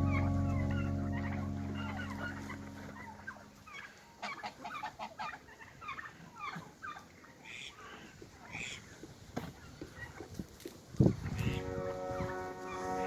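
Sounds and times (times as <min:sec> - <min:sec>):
background music: 0:00.0 - 0:03.9, 0:11.4 - 0:13.0
fowl clucking and calling: 0:00.0 - 0:09.0, 0:11.2 - 0:13.0.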